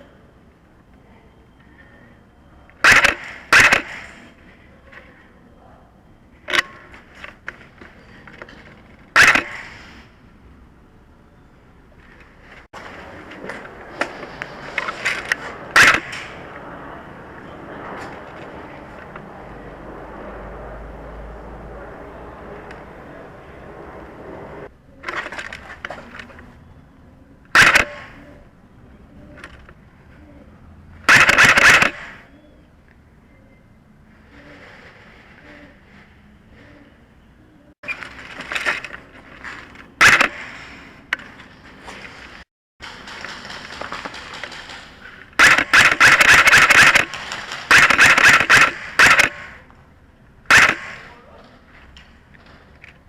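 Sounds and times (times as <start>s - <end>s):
sharp crack: 2.8s - 4.4s, 8.5s - 10.1s, 12.5s - 16.7s, 27.5s - 28.2s, 31.0s - 32.3s, 37.8s - 49.8s, 50.5s - 53.0s
airsoft rifle firing bursts: 9.2s - 9.8s, 15.1s - 16.4s, 27.6s - 28.1s, 31.1s - 32.2s, 40.0s - 40.6s, 45.4s - 49.6s, 50.5s - 51.1s.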